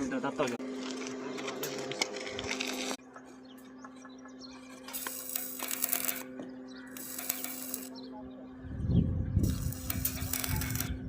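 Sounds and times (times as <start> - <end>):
steady electrical hum: 4.4 - 11.0
welding arc crackling and hissing: 4.8 - 6.3, 6.9 - 8.0, 9.4 - 11.0.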